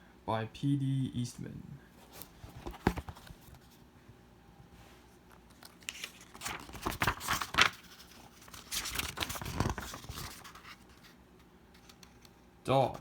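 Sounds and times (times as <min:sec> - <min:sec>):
paper pages rustling: 0:02.0 - 0:03.8, 0:05.3 - 0:13.0.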